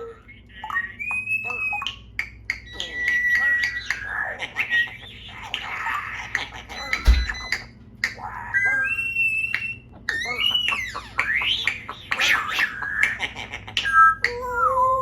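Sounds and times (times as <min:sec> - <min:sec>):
parrot whistling and squawking: 0:00.0 - 0:15.0.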